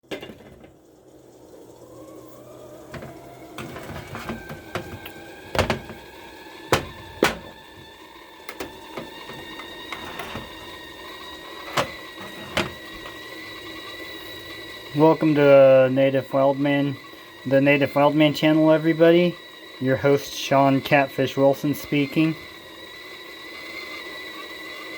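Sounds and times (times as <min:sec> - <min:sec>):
machine whine: 0:00.0 - 0:24.9
sharp clicks and knocks: 0:02.9 - 0:06.1, 0:06.7 - 0:07.9, 0:08.5 - 0:10.8.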